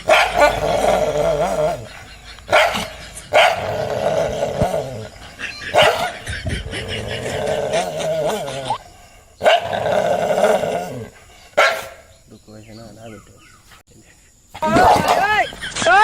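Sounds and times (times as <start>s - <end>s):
dog barking: 0.0s - 0.7s, 2.5s - 3.8s, 5.7s - 6.3s, 9.4s - 9.7s, 11.6s - 12.1s
dog growling: 0.0s - 8.8s, 9.4s - 12.0s.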